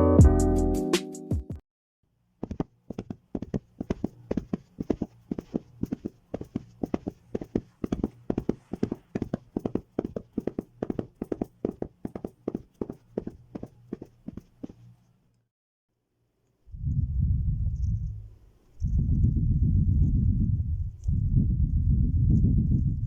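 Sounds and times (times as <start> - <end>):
clip-clop hoofbeat knocks: 2.4 - 14.8.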